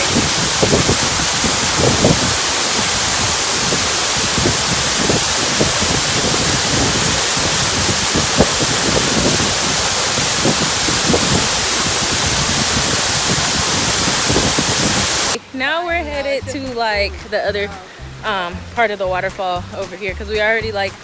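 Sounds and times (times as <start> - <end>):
waterfall rushing: 0.0 - 15.5
low rumbles: 0.0 - 21.0.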